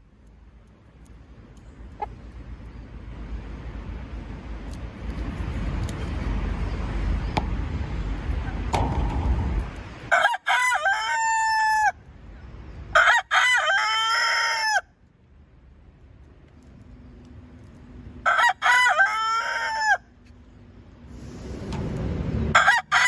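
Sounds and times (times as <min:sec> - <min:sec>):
steady low rushing noise: 0:01.2 - 0:10.2
rooster crowing: 0:10.1 - 0:12.0, 0:12.9 - 0:14.9, 0:18.2 - 0:20.1, 0:22.5 - 0:23.0.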